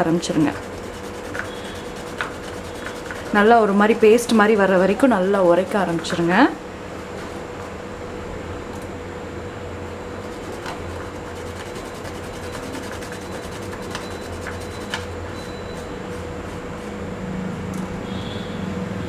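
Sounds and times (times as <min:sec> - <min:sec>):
steady hum: 0:00.0 - 0:19.0
herb scraping on grinding stone: 0:00.3 - 0:03.5, 0:10.2 - 0:16.0.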